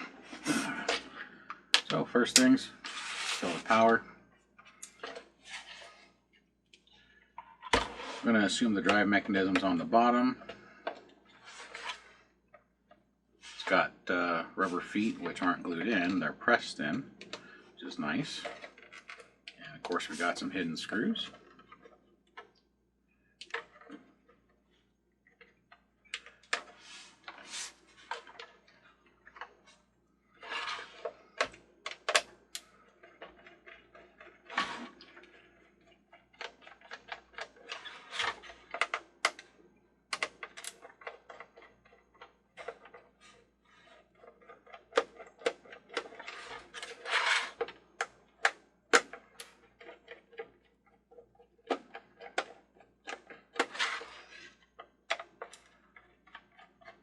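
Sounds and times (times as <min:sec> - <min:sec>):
plastic base being handled: 0:00.0 - 0:57.0.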